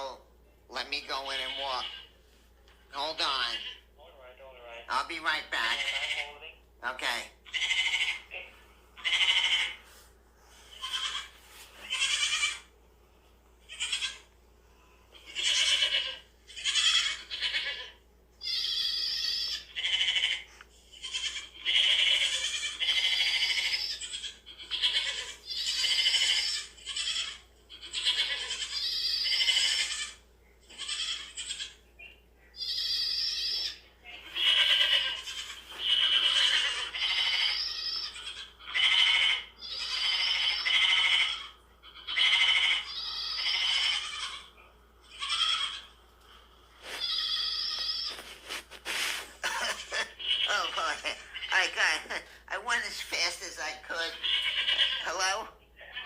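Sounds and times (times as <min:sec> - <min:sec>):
goats bleating: 0:05.6 - 0:06.4, 0:07.5 - 0:09.8, 0:10.6 - 0:12.7, 0:13.7 - 0:14.3, 0:15.1 - 0:31.8, 0:32.6 - 0:46.0, 0:46.8 - 0:52.4, 0:53.9 - 0:56.0.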